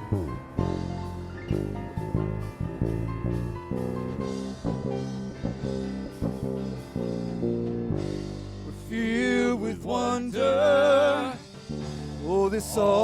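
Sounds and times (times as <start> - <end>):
drum kit playing: 0.0 - 8.8
instrumental worship music: 8.0 - 13.0.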